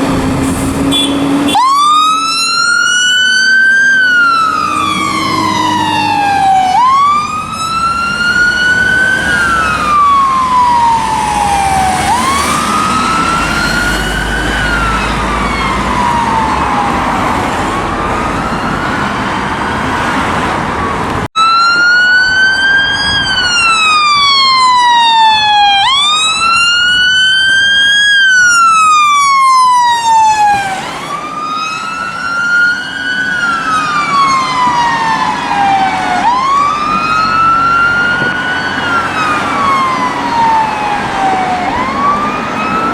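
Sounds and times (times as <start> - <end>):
fire engine siren wailing: 0.0 - 42.9.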